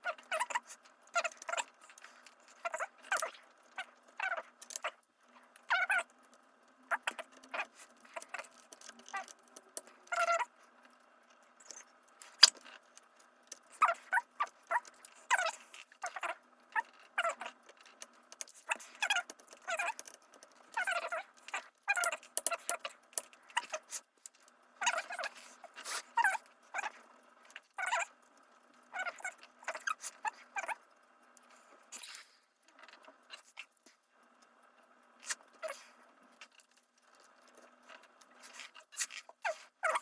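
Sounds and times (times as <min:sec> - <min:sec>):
squeaky scrapes of screws: 0:13.5 - 0:24.0.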